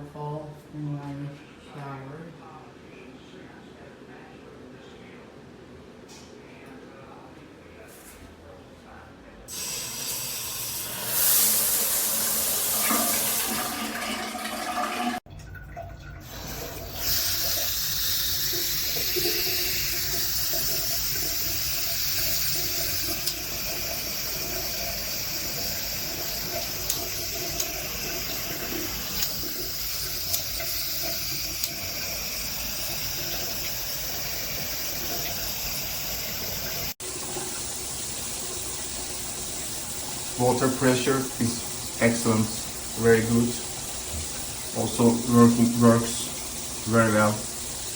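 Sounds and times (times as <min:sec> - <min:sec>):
shower water spraying: 0:09.5 - 0:15.2, 0:16.2 - 0:47.9.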